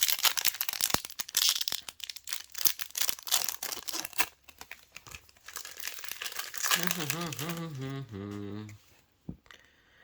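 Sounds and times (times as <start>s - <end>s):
foil wrapper crinkling and tearing: 0.0s - 7.8s.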